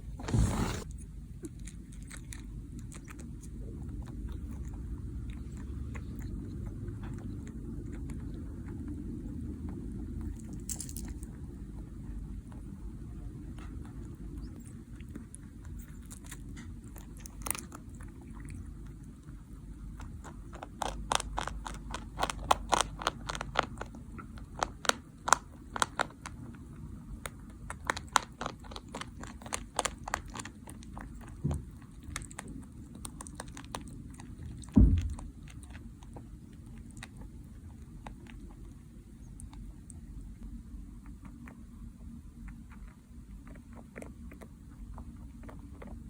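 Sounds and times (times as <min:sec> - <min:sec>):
rabbit crunching food: 0:00.0 - 0:46.0
low thump: 0:34.7 - 0:35.3.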